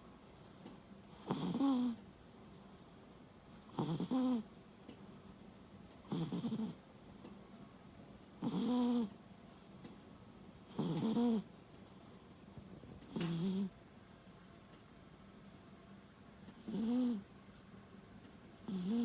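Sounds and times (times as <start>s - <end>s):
cat snoring: 0.4s - 2.0s, 3.6s - 4.5s, 6.0s - 6.8s, 8.4s - 9.1s, 10.6s - 11.5s, 13.0s - 13.8s, 16.5s - 17.3s, 18.6s - 19.0s.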